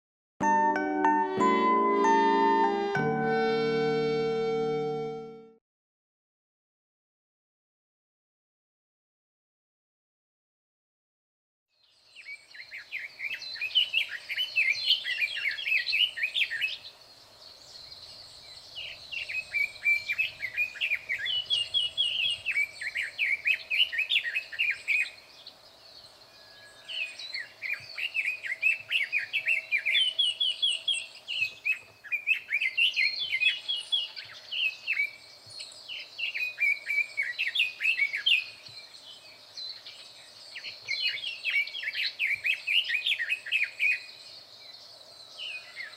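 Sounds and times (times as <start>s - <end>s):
bird warbling song: 11.8s - 45.9s.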